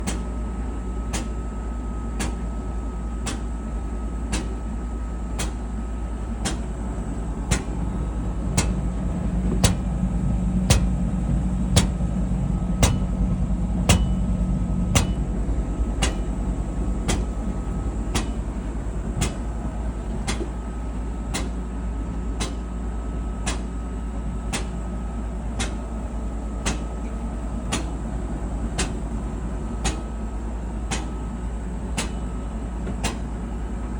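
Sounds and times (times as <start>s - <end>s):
clothes dryer humming: 4.1s - 22.7s.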